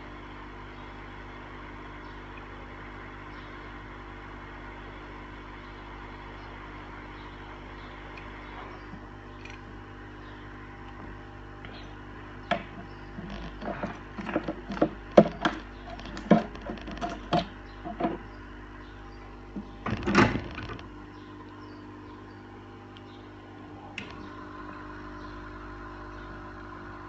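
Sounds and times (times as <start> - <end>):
low electrical hum: 0.0 - 27.0
small tools clicking and tapping: 9.4 - 9.6.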